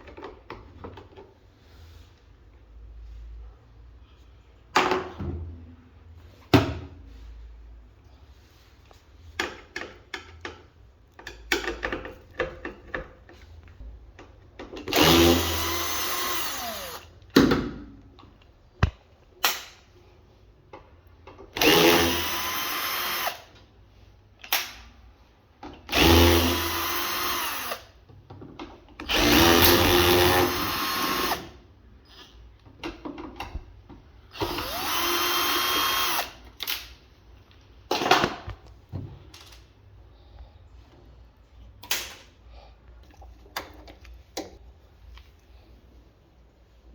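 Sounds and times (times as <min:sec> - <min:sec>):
electric drill running: 0:14.9 - 0:17.1, 0:21.6 - 0:23.5, 0:25.9 - 0:27.8, 0:29.1 - 0:31.5, 0:34.4 - 0:36.4.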